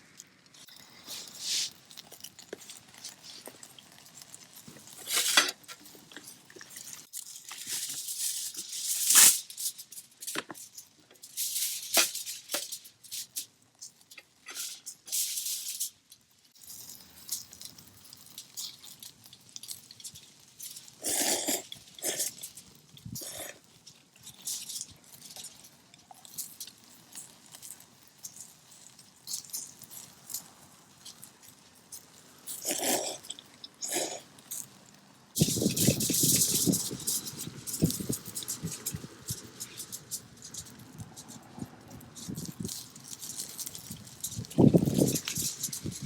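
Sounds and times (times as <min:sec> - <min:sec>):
wood fire crackling: 0:00.0 - 0:46.0
rustling: 0:00.6 - 0:13.4.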